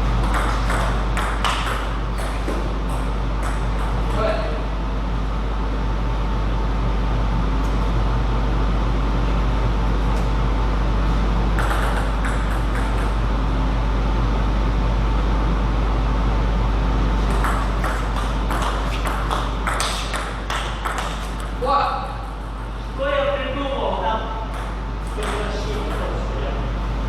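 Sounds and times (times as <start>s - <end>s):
loud low hum: 0.0s - 27.0s
table tennis ball hits: 0.2s - 4.3s, 11.6s - 13.2s, 17.3s - 21.6s, 24.5s - 26.1s.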